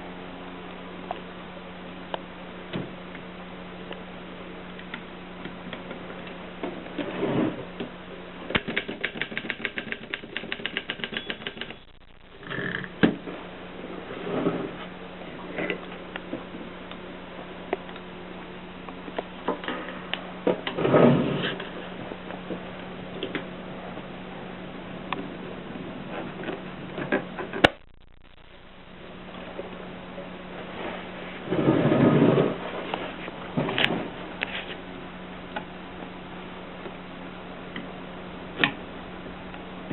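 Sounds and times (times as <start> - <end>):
steady low hum: 0.0 - 39.9
typewriter keys striking: 8.6 - 11.8.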